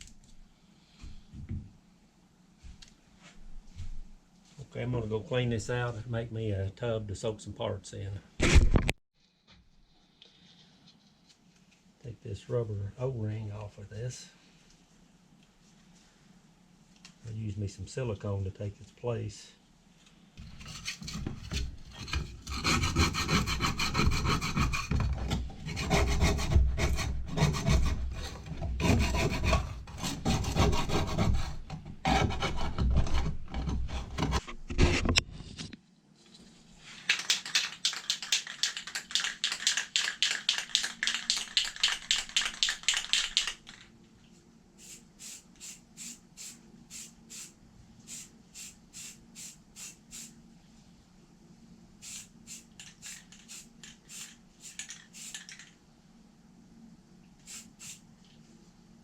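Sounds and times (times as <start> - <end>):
hand scraping metal parts: 20.4 - 35.1.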